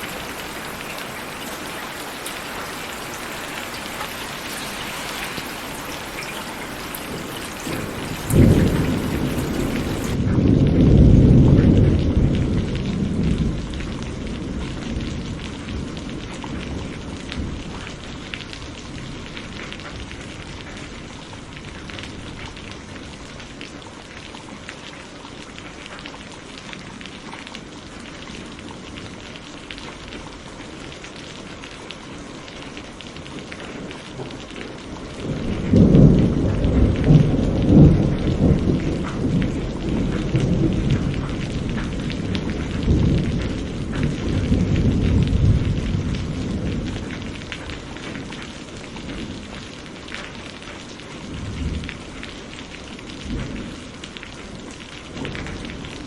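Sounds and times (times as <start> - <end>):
thunder rumbling: 0.0 - 19.4, 34.2 - 48.4
steady rain falling: 0.0 - 56.0.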